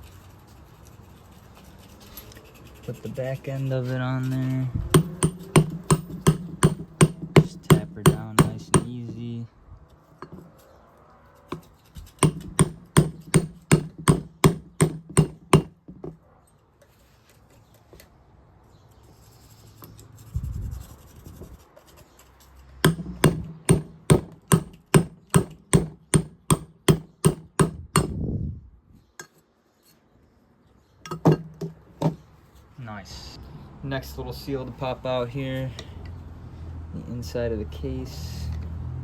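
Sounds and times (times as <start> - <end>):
hammer tapping on metal socket: 5.0 - 9.0, 12.2 - 15.7, 22.8 - 28.2.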